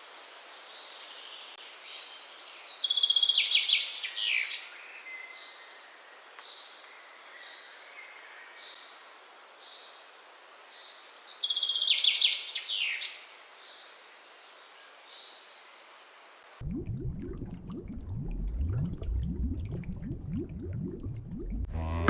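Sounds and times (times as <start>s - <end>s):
steady outdoor hiss: 0.0s - 16.6s.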